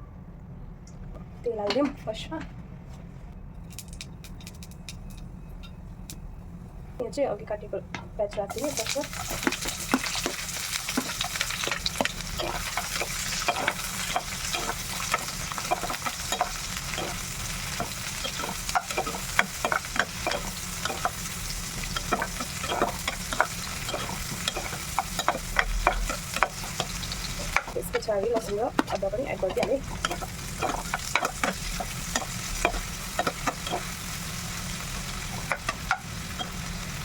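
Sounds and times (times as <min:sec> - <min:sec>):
onion sizzling in hot oil: 0:08.4 - 0:37.0
utensil scraping pan: 0:08.5 - 0:36.7.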